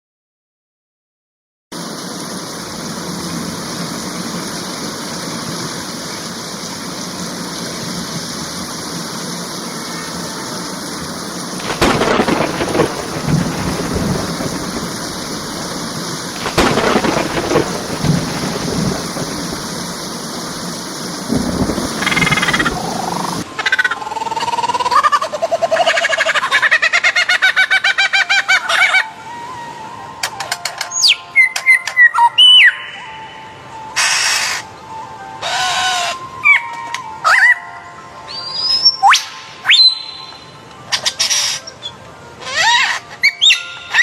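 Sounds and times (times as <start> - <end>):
heavy steady rain: 1.8 - 23.6
thunder cracking and rumbling: 11.0 - 23.4.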